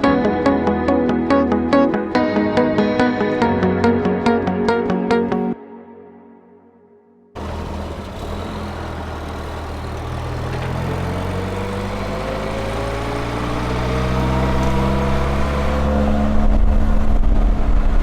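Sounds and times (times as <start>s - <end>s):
car engine accelerating: 7.4s - 18.0s.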